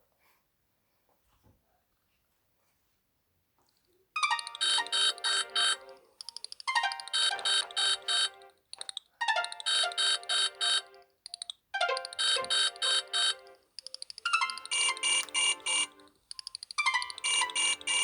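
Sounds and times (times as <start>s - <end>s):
mobile phone ringtone: 4.2s - 18.0s.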